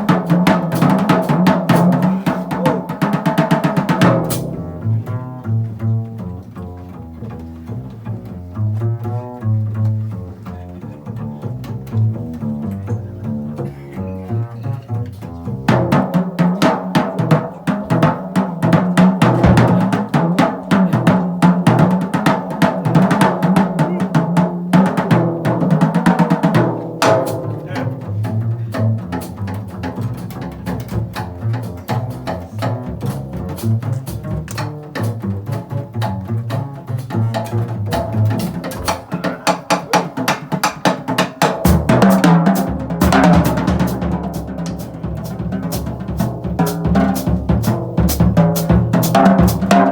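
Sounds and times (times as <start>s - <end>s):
jazz drum kit: 0.0s - 49.9s
plucked upright bass: 0.0s - 49.9s.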